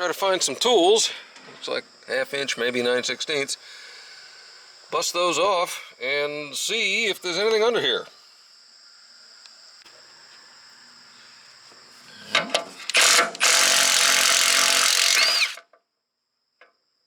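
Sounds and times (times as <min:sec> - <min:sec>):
faint high buzz: 0:00.0 - 0:15.6
power tool driving bolts: 0:12.2 - 0:15.8.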